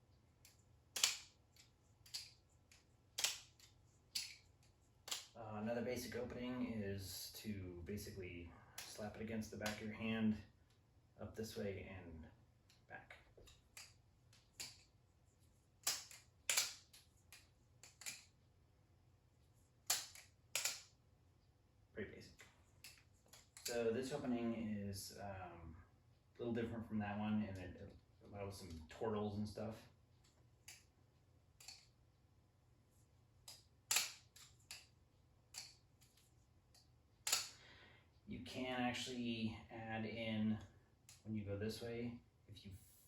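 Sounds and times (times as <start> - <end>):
butterfly knife clicking: 15.8 - 18.3, 19.9 - 20.9, 33.5 - 34.9.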